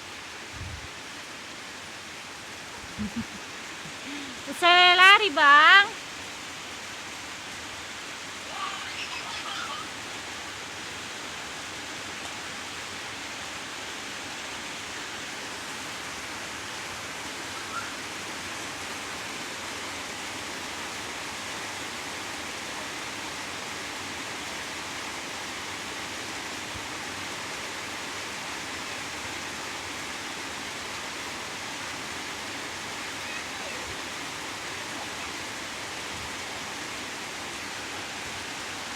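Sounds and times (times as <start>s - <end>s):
heavy rain: 0.0s - 38.9s
faint voice: 8.4s - 9.9s.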